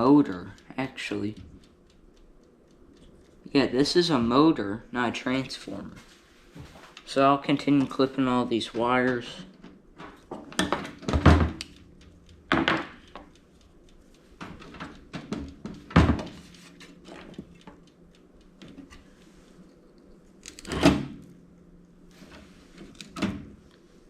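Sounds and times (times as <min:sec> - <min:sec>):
wire cutters clipping: 0:19.7 - 0:21.3.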